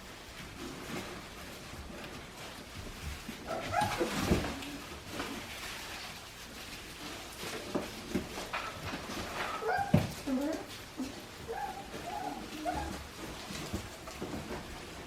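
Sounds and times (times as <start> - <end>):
puppies whining and yipping: 3.5 - 4.6, 9.4 - 13.8.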